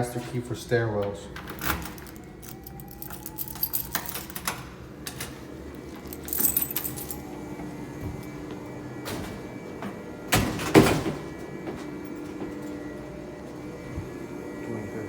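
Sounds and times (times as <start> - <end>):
keys jangling: 1.4 - 7.4.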